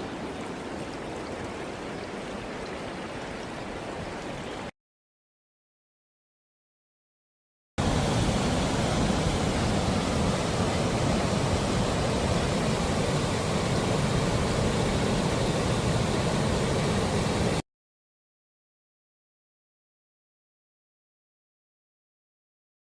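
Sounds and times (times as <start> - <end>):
fast-flowing river rushing: 7.8 - 17.6.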